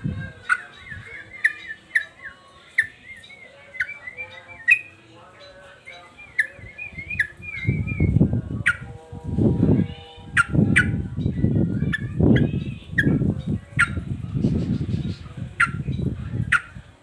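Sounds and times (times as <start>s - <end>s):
low rumbling noise: 0.0s - 1.4s, 6.3s - 17.0s.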